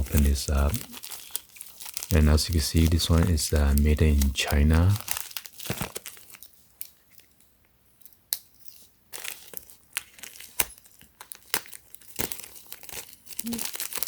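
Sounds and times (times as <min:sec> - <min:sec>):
packaging rustling and crinkling: 0:00.0 - 0:07.4, 0:08.7 - 0:14.0.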